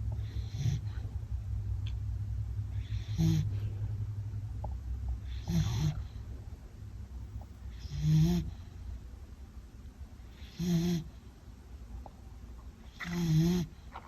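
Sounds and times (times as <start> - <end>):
dog snoring: 0.0 - 1.2, 2.7 - 3.9, 5.2 - 6.2, 7.4 - 8.8, 10.3 - 11.3, 12.8 - 14.0.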